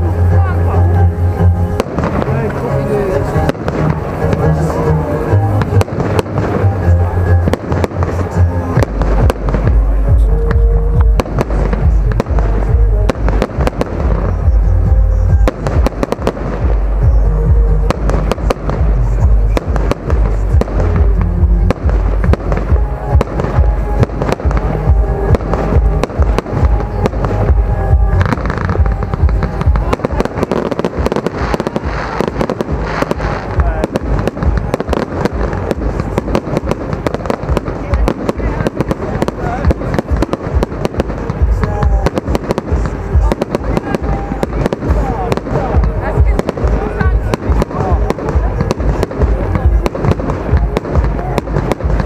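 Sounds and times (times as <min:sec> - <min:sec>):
fireworks bursts and bangs: 0:00.0 - 0:52.0.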